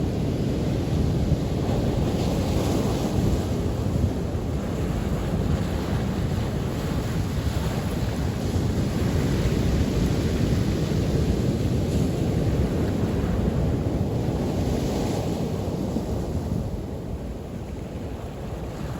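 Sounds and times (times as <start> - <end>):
wind buffeting microphone: 0.0 - 18.9.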